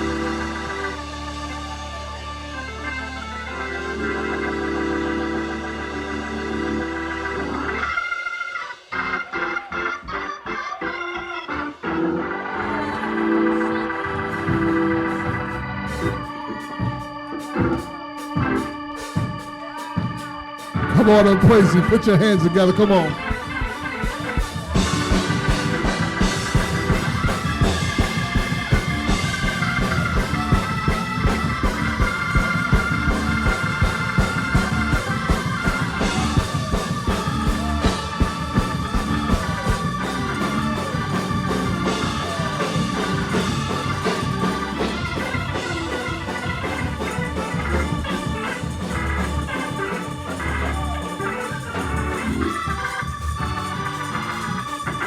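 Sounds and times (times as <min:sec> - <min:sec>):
organ music: 0:00.0 - 0:55.0
drums fast steady beat: 0:14.2 - 0:55.0.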